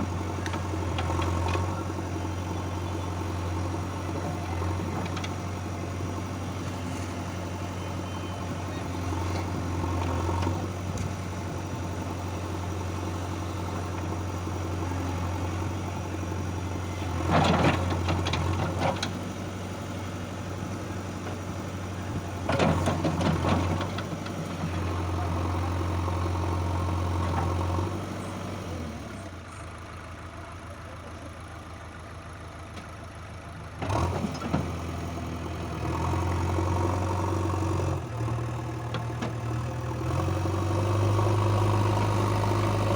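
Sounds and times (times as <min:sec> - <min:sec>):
diesel engines idling: 0:00.0 - 0:42.9
clanking and clatter: 0:22.4 - 0:24.4.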